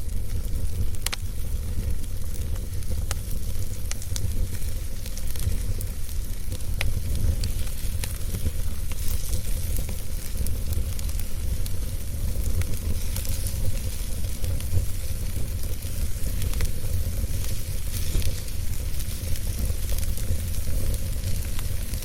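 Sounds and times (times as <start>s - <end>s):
fire hiss: 0.0s - 22.0s
wood fire crackling: 0.0s - 22.0s.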